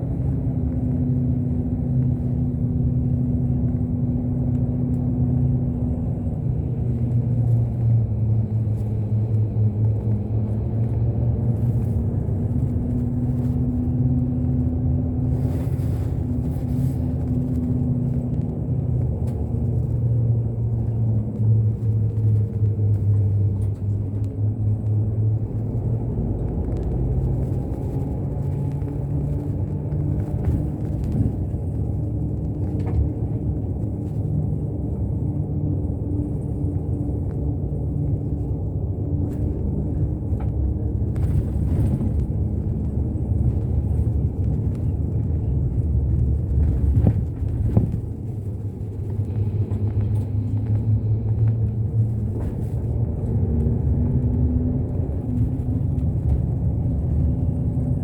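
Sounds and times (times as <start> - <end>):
bus engine and road rumble: 0.0 - 58.0.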